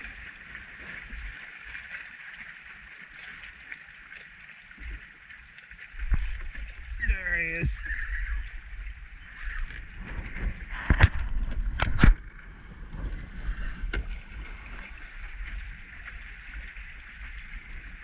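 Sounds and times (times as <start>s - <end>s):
water lapping against kayak hull: 0.0s - 18.0s
wind buffeting microphone: 6.0s - 18.0s.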